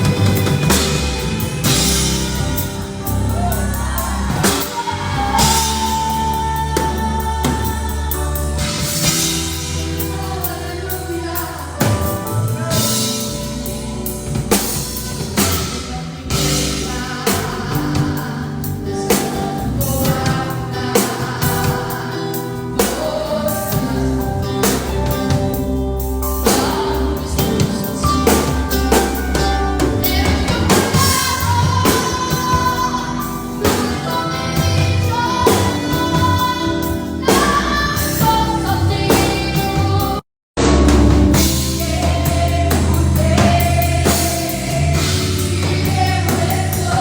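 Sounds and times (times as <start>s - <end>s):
person singing: 0.0s - 40.2s
band playing a song: 0.0s - 47.0s
steady drum hits: 40.6s - 47.0s.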